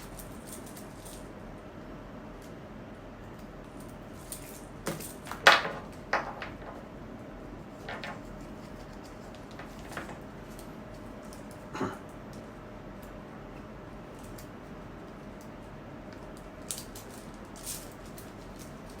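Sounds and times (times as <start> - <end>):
toy packaging clicks and rustles: 16.3 - 19.0.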